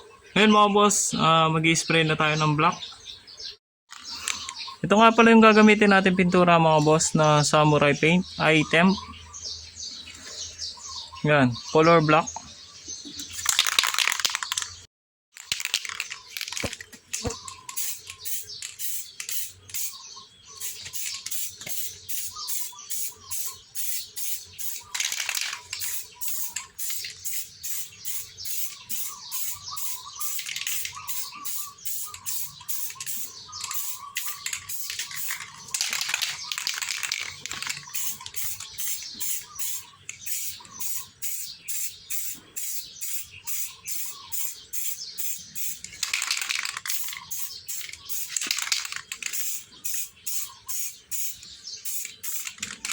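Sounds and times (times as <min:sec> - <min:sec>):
aerosol spray can hissing: 0:17.3 - 0:20.0, 0:20.6 - 0:25.0, 0:25.8 - 0:35.4, 0:37.8 - 0:45.8, 0:46.9 - 0:48.7, 0:49.3 - 0:52.6.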